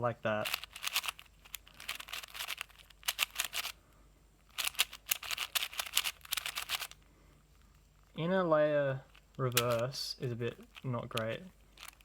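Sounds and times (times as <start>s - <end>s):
puzzle cube plastic clicking: 0.4s - 3.8s, 4.5s - 7.0s, 9.1s - 9.9s, 10.5s - 12.0s.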